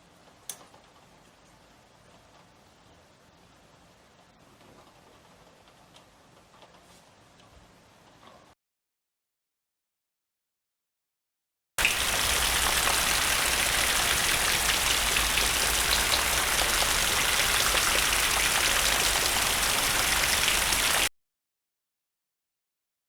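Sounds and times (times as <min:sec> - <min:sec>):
rainfall hiss: 0:11.8 - 0:21.1.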